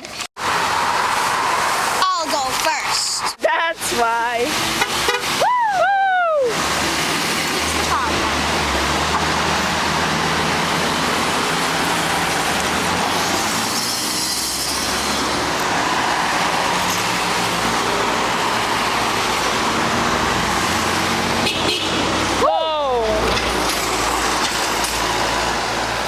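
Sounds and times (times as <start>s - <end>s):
road traffic passing: 0.0s - 26.0s
vehicle passing close: 0.4s - 3.4s, 6.5s - 22.4s.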